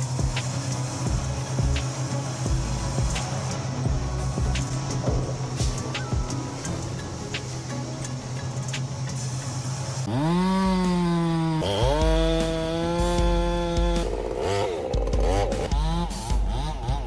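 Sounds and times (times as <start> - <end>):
chainsaw engine revving: 10.1 - 17.0.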